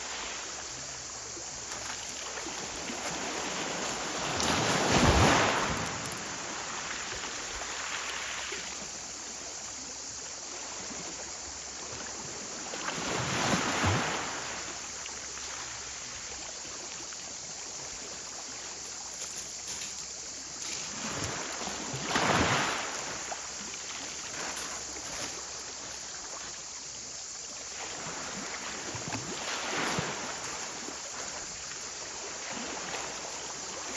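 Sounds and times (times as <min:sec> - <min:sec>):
waves crashing on shore: 0:02.5 - 0:08.7, 0:12.7 - 0:14.9, 0:20.9 - 0:23.4
steady wash of surf: 0:02.8 - 0:08.6.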